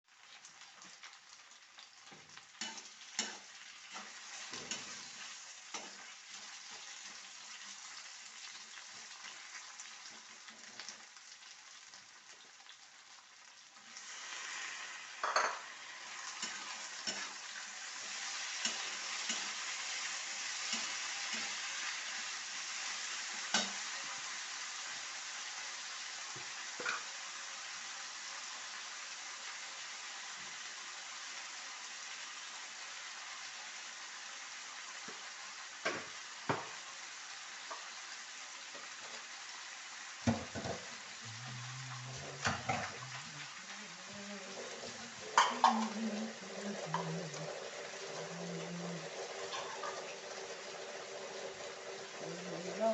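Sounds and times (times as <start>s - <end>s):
food sizzling in hot oil: 0.0s - 52.9s
spoon stirring and striking pan: 2.1s - 7.2s, 16.3s - 22.0s, 23.4s - 23.9s, 44.8s - 45.9s.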